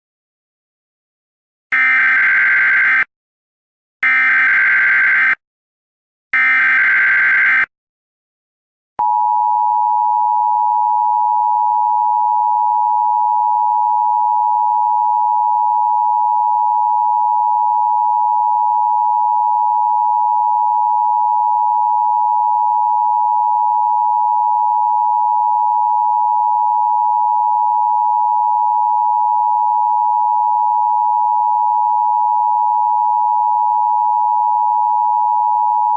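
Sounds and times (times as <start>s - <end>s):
steady alarm tone: 1.8s - 3.1s, 4.0s - 5.4s, 6.4s - 7.7s.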